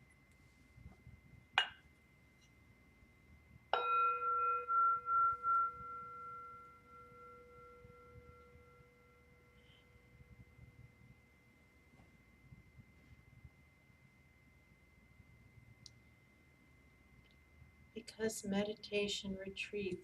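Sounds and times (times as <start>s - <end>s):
meditation bell ringing: 3.8s - 10.6s.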